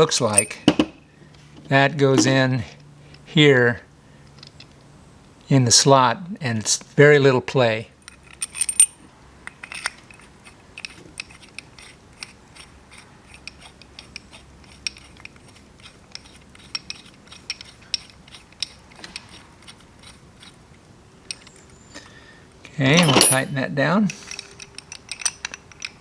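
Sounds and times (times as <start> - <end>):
metallic clicks of a hand tool: 24.1 - 26.0.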